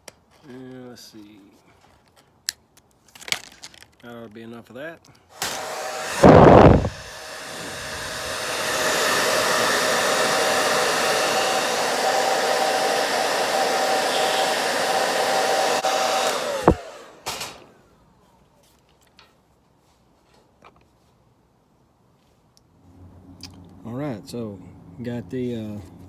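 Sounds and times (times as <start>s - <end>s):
hot-air blower whining: 5.3s - 17.8s.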